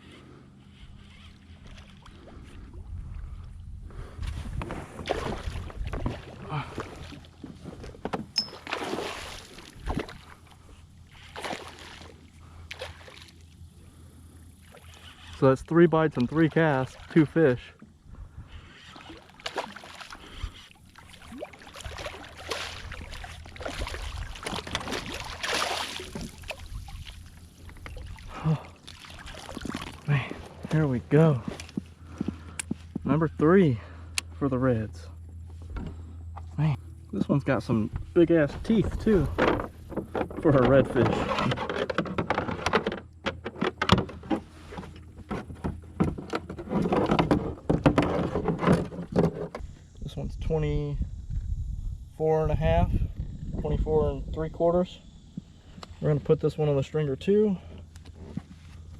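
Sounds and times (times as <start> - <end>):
water sloshing around a kayak: 0.0 - 50.0, 56.8 - 58.9
clicks and knocks from gear: 38.9 - 49.7.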